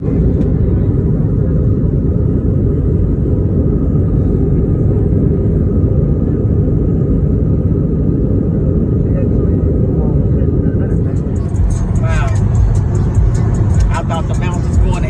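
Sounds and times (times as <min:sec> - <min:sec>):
vehicle interior rumble: 0:09.1 - 0:15.0.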